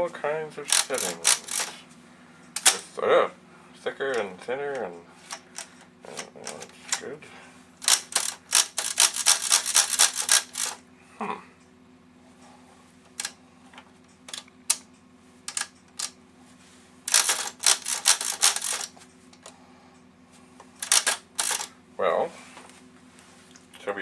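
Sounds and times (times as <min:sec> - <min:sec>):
manual typewriter key strikes: 0:00.7 - 0:01.8, 0:02.6 - 0:02.9, 0:07.8 - 0:10.8, 0:17.1 - 0:18.9, 0:20.8 - 0:21.7.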